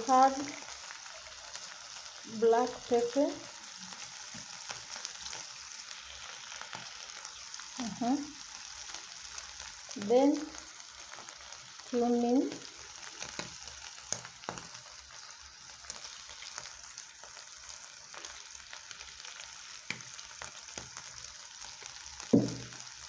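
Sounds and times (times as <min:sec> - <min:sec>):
beef sizzling in a pan: 0:00.0 - 0:23.0
knock: 0:22.3 - 0:22.7.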